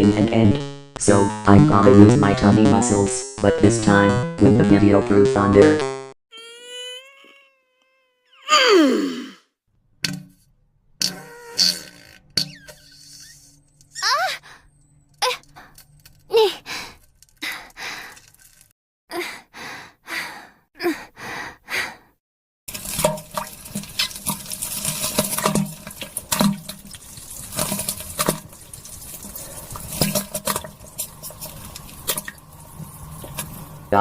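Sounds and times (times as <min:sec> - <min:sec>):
woman straining and moaning: 0:06.3 - 0:09.4, 0:14.0 - 0:14.6, 0:15.2 - 0:18.2, 0:19.1 - 0:22.0
splashing into toilet water: 0:22.7 - 0:33.8.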